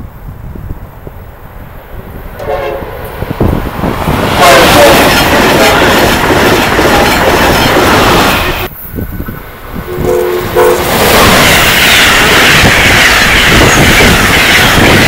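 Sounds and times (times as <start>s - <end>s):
train wheels rushing on rails: 0.0s - 15.0s
train air horn blasts: 2.4s - 3.2s, 4.4s - 6.1s, 9.9s - 11.0s.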